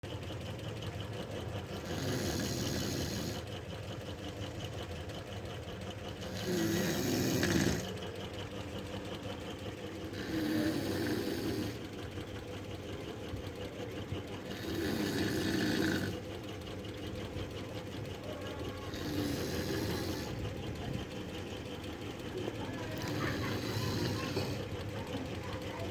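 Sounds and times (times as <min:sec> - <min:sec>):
woman snoring: 0:01.8 - 0:03.5, 0:06.2 - 0:07.9, 0:10.1 - 0:11.9, 0:14.5 - 0:16.2, 0:18.9 - 0:20.4, 0:23.0 - 0:24.7.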